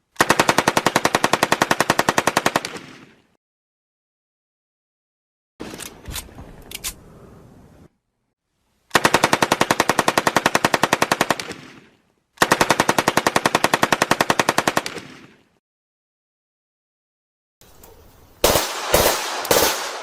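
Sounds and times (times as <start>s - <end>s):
machine gun bursts: 18.4s - 20.0s.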